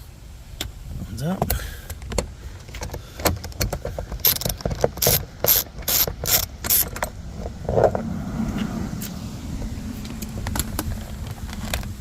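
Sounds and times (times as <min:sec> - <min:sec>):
socket ratchet clicking: 0:02.9 - 0:07.1.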